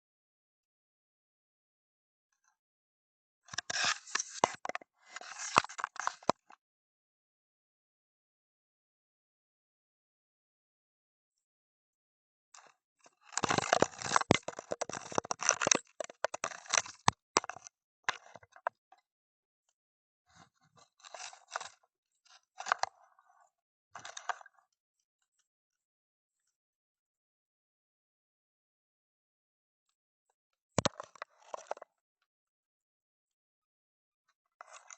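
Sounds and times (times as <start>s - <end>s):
crackling scraping clicks underwater: 3.5s - 6.6s, 12.6s - 18.8s, 24.0s - 24.6s, 30.8s - 32.0s, 34.6s - 34.9s.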